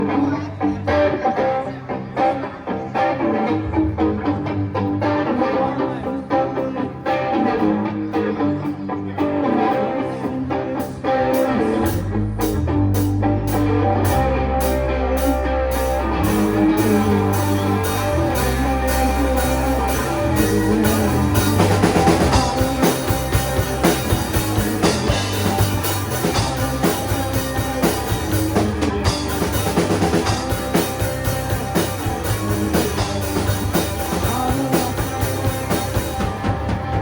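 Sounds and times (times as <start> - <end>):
rock guitar: 0.0 - 37.0
steady drum beat: 12.6 - 37.0.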